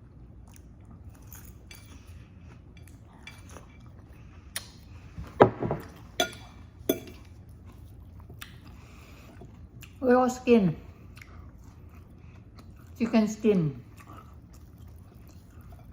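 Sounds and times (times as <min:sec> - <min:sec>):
cutlery clinking against dishes: 0:05.4 - 0:07.3.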